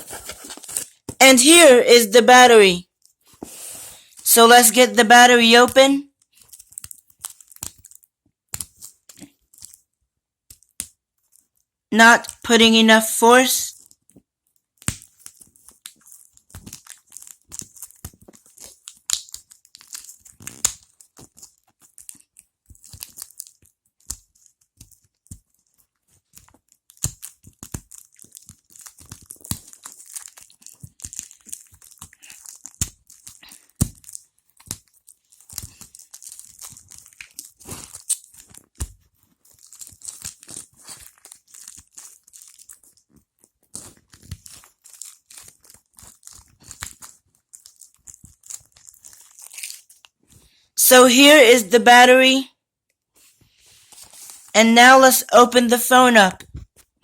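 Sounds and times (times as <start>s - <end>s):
plastic packaging crinkling and tearing: 0.0s - 1.2s, 6.2s - 9.9s, 13.7s - 50.5s.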